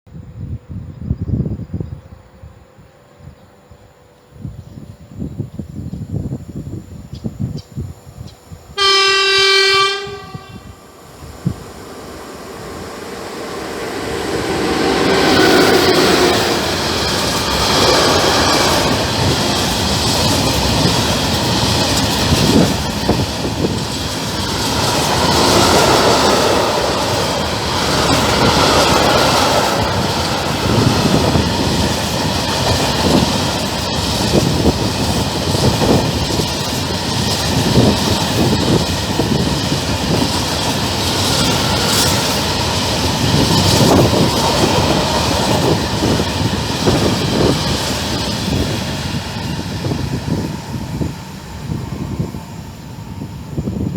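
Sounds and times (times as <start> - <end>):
train rumbling: 0.1 - 53.9
locomotive horn blast: 8.8 - 10.8.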